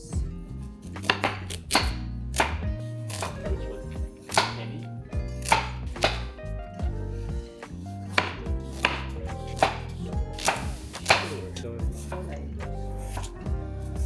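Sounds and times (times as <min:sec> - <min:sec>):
knife chopping on cutting board: 0:00.8 - 0:03.4, 0:04.2 - 0:04.7, 0:05.4 - 0:06.3, 0:08.1 - 0:12.3, 0:13.0 - 0:13.4.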